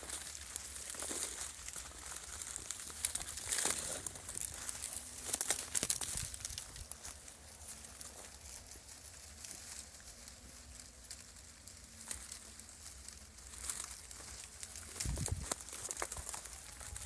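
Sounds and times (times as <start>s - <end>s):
faint rustling and crinkling: 0.0s - 17.0s.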